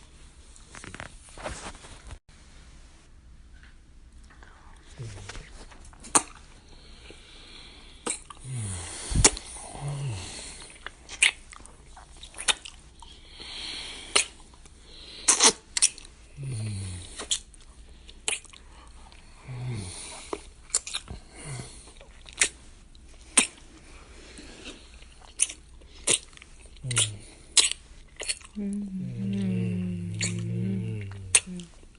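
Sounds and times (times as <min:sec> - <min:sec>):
wet lip smacks: 0:06.0 - 0:06.4, 0:08.0 - 0:08.4, 0:10.6 - 0:13.1, 0:14.1 - 0:14.6, 0:15.3 - 0:16.1, 0:18.2 - 0:18.6, 0:20.2 - 0:21.2, 0:22.0 - 0:22.6, 0:23.3 - 0:23.6, 0:25.2 - 0:28.6, 0:30.2 - 0:30.4, 0:31.1 - 0:31.8
soft breathing: 0:06.6 - 0:11.0
low humming: 0:28.5 - 0:31.9.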